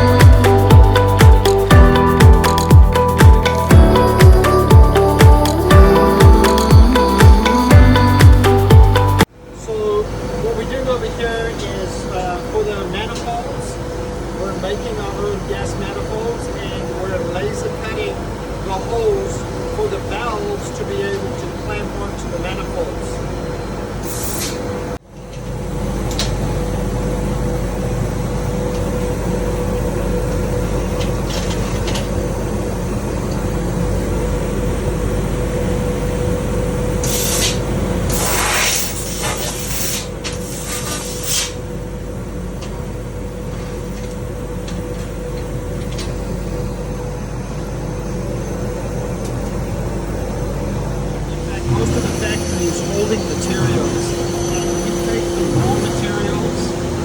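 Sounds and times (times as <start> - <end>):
hissing air bursts: 37.0 - 41.6
laser cutting machine humming: 46.3 - 57.0.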